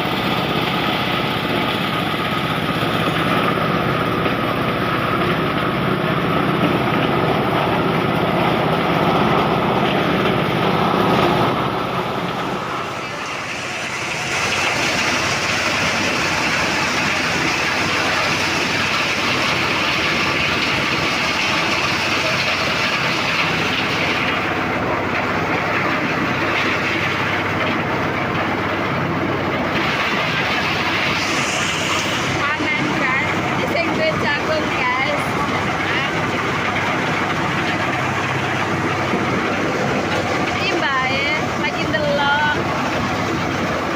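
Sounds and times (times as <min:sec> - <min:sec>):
corn sheller engine clatter: 0:00.0 - 0:43.9.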